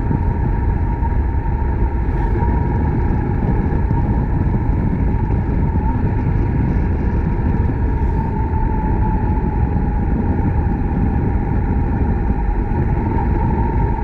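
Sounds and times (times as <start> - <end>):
road and wind rumble: 0.0 - 14.0
steady whine: 0.0 - 14.0.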